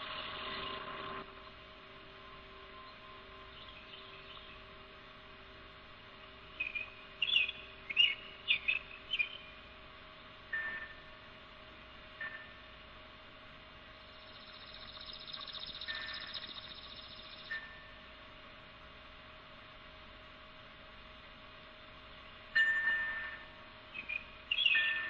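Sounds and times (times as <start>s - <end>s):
faint steady hum: 0.0s - 25.0s
birds chirping: 2.8s - 4.7s, 6.4s - 9.7s, 14.1s - 17.9s, 23.9s - 25.0s.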